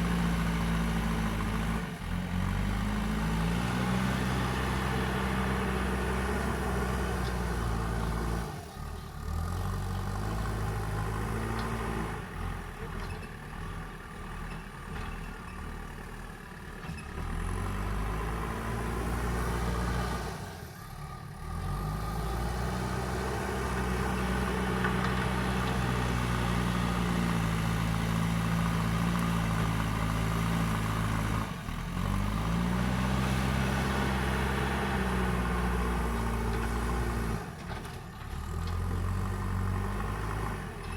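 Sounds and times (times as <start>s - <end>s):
diesel engine revving under load: 0.0s - 13.8s, 17.1s - 40.9s.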